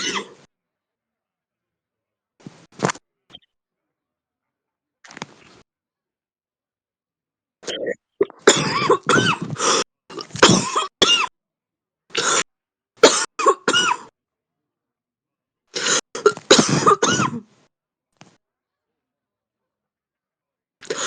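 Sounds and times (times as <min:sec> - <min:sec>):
deep chesty coughing: 0:07.8 - 0:11.3, 0:15.8 - 0:17.4.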